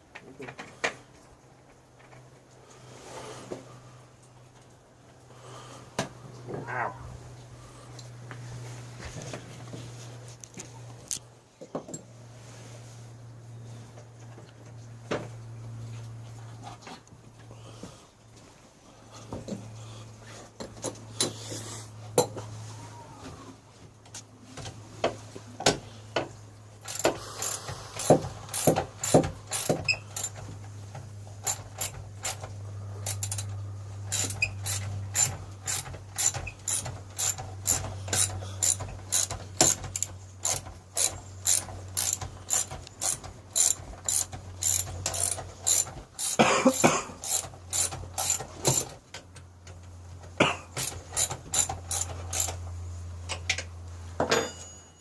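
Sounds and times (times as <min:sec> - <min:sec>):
steady low hum: 0:01.1 - 0:55.0
ratchet wrench clicking: 0:26.8 - 0:30.4, 0:31.4 - 0:46.4, 0:47.2 - 0:48.9, 0:50.8 - 0:52.6.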